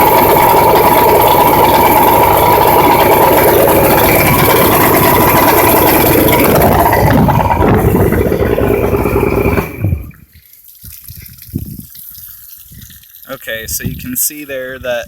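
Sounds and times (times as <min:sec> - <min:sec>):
outboard motor running: 0:00.0 - 0:10.3
water dripping and trickling: 0:10.1 - 0:14.4.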